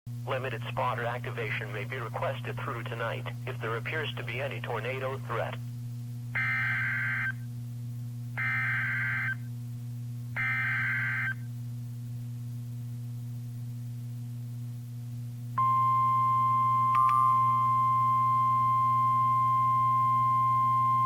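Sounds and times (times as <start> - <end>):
steady low hum: 0.1 - 21.0
warning alarm tone: 6.4 - 7.4, 8.4 - 9.4, 10.4 - 11.4.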